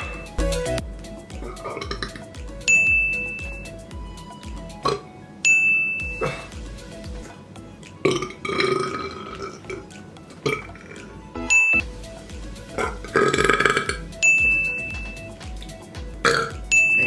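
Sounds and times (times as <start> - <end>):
music with steady beat: 0.0 - 17.0
person burping loudly: 1.4 - 2.3, 6.2 - 6.6, 8.0 - 9.9, 10.5 - 11.0, 12.8 - 14.0, 16.2 - 17.0.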